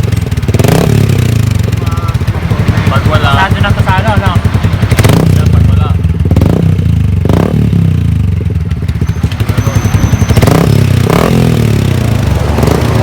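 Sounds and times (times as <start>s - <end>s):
loud motorcycle engine idling: 0.0s - 13.0s
throttle blips: 8.7s - 11.3s.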